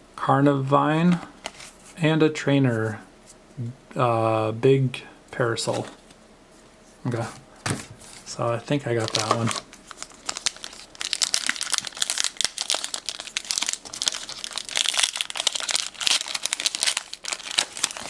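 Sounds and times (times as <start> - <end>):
foil wrapper crinkling: 8.7 - 18.0
foil wrapper tearing: 9.0 - 18.0.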